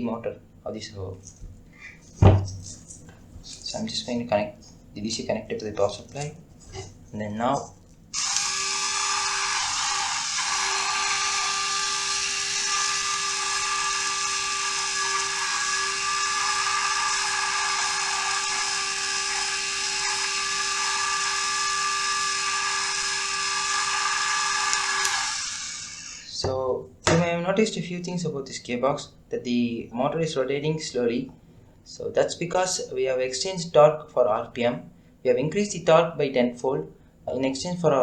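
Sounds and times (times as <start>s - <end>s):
small electric motor whine: 8.1s - 26.3s.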